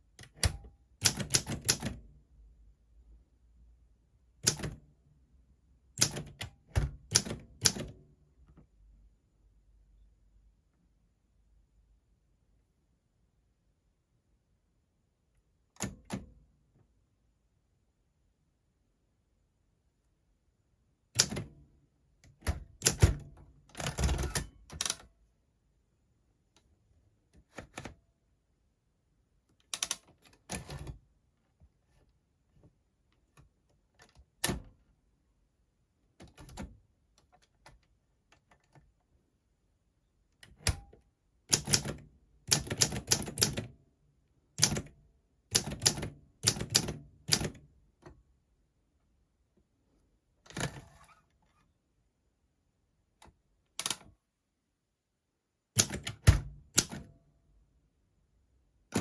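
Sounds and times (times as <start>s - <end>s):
manual typewriter key strikes: 0.2s - 2.0s, 4.4s - 4.8s, 6.0s - 7.9s, 21.2s - 21.5s, 22.4s - 25.0s, 41.5s - 43.7s, 44.6s - 44.9s, 45.5s - 47.6s, 55.8s - 57.1s.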